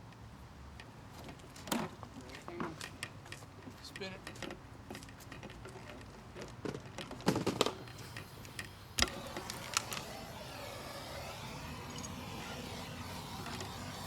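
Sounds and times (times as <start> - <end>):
steady hissing: 7.6 - 14.0.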